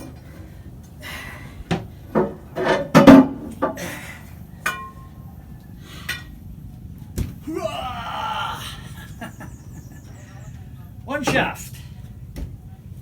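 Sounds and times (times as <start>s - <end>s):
metallic clanks and knocks: 1.7s - 3.8s, 4.6s - 5.1s.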